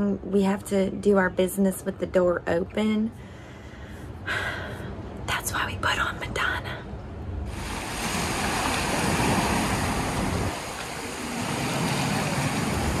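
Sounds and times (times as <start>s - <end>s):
wind: 0.0s - 13.0s
sea waves: 7.5s - 13.0s.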